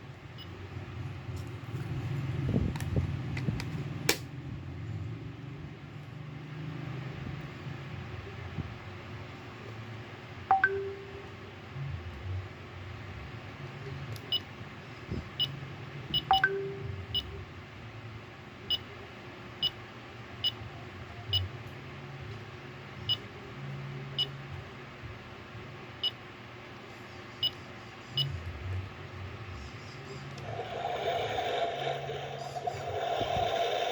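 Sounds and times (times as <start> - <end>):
alarm clock beeps: 16.2 - 16.9.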